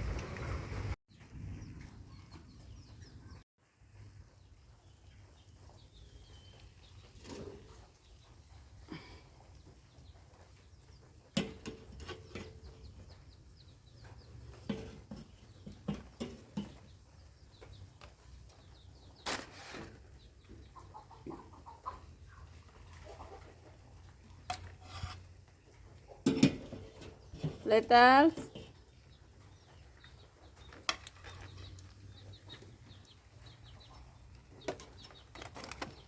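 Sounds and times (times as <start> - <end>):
chickens clucking: 20.0 - 27.8, 28.5 - 36.0.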